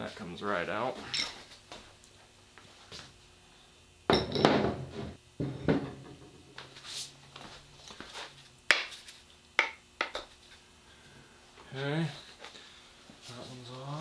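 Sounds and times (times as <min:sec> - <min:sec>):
metal tools and engine parts clanking: 0:01.1 - 0:01.4, 0:04.1 - 0:04.7.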